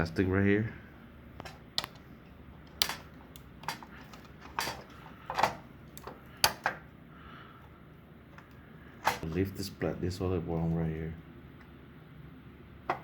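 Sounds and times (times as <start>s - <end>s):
plastic parts clicking and tapping: 1.4s - 6.8s.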